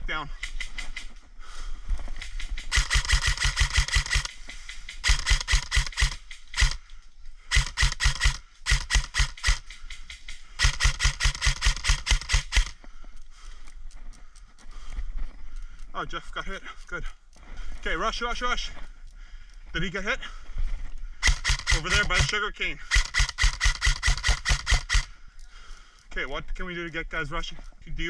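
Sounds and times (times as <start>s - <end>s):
airsoft gun rapid firing: 2.3s - 6.8s, 7.5s - 9.8s, 10.6s - 12.8s, 21.2s - 25.1s.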